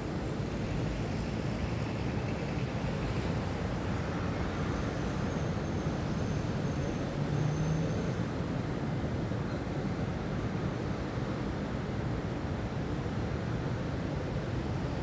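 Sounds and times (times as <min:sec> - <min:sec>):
distant road traffic: 0:03.0 - 0:09.0.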